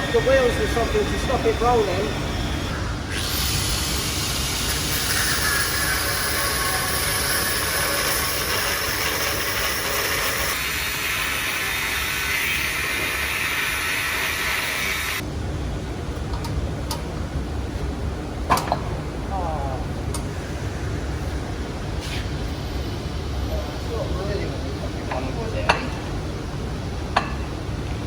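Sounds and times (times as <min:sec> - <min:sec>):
welding arc crackling hiss: 0:00.1 - 0:15.2.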